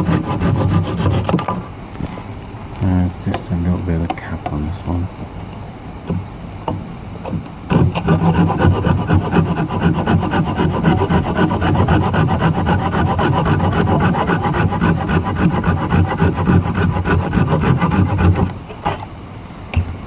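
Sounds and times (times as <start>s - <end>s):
hand saw cutting wood: 0.0s - 1.5s, 7.7s - 18.6s.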